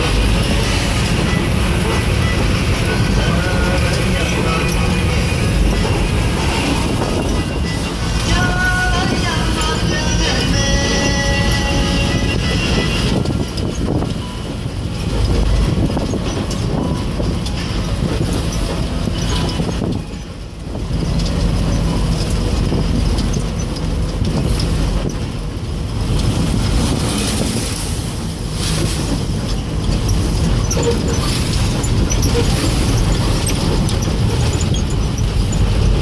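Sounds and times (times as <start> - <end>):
bus engine running: 0.0 - 36.0
road and wind noise: 0.0 - 36.0
small rattles and knocks: 15.0 - 36.0.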